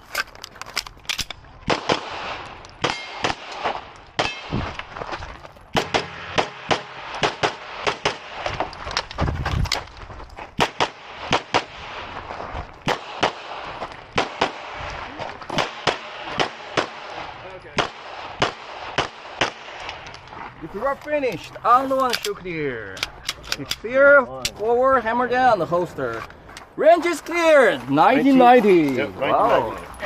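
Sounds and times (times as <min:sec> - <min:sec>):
pistol shots: 0:01.6 - 0:04.7, 0:05.7 - 0:08.5, 0:10.6 - 0:12.1, 0:12.8 - 0:20.0.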